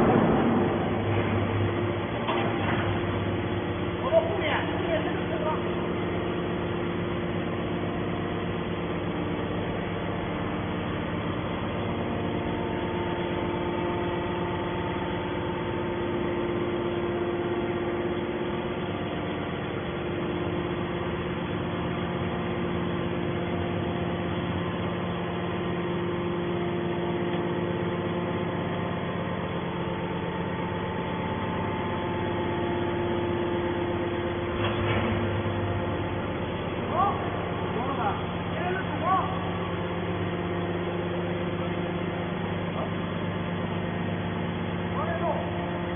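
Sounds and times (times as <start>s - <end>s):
hydraulic motor and pump humming: 0.0s - 45.9s.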